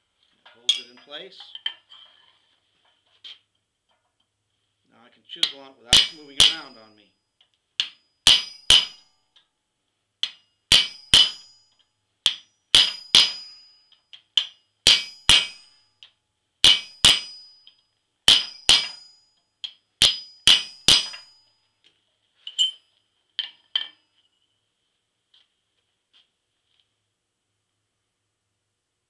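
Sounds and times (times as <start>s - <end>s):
hammer striking chisel on steel: 0.6s - 1.2s, 5.4s - 7.0s, 7.8s - 9.5s, 10.2s - 21.6s.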